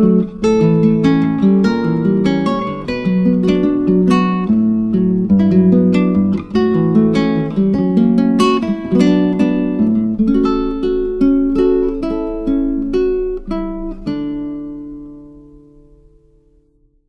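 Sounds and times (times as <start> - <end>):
plucked acoustic guitar music: 0.0 - 16.9.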